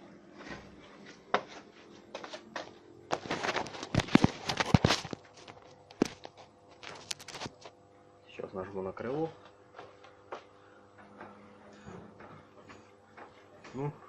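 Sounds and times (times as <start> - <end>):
knocks and clatter of handling things: 2.6 - 7.7.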